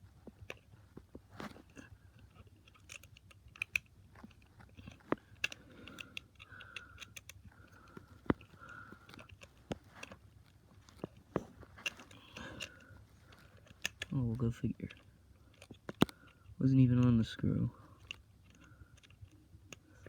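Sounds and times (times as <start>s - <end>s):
plastic toy parts handled: 0.0s - 20.0s
screwdriver clicks and taps: 2.6s - 10.2s, 10.9s - 14.2s, 14.9s - 16.4s.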